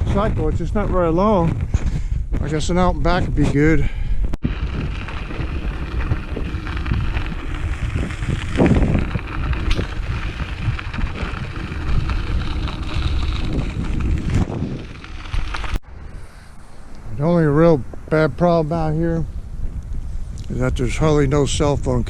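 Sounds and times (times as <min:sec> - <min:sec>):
bicycle tyres on gravel: 0:00.0 - 0:17.4
wind noise on microphone: 0:00.0 - 0:22.0.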